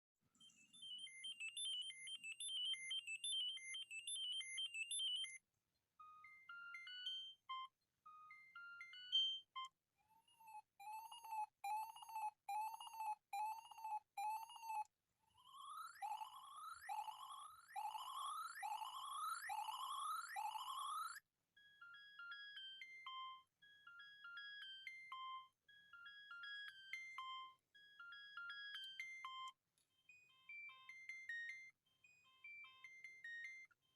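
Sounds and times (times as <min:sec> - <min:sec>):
mobile phone ringtones: 0:15.4 - 0:21.2.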